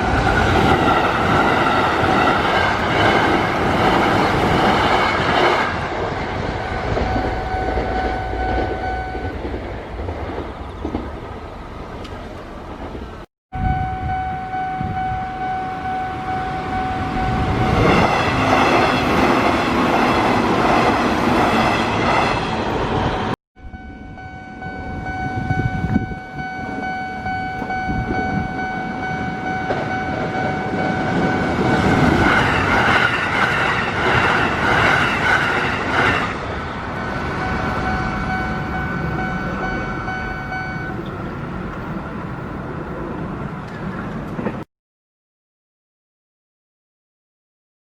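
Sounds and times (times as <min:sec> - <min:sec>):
road traffic noise: 0:00.0 - 0:44.7
train rumbling: 0:00.0 - 0:44.7
level crossing warning bell: 0:06.6 - 0:09.6, 0:13.6 - 0:20.4, 0:23.6 - 0:33.5, 0:36.9 - 0:43.8.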